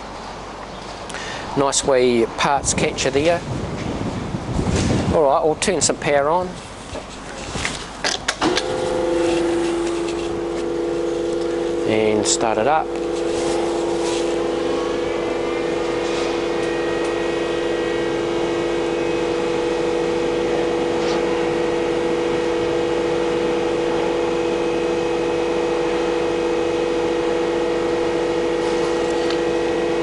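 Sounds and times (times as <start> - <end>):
lathe machine hum: 8.4 - 30.0.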